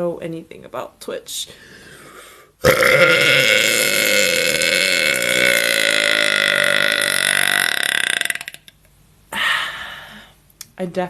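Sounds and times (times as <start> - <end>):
woman burping: 2.6 - 8.7.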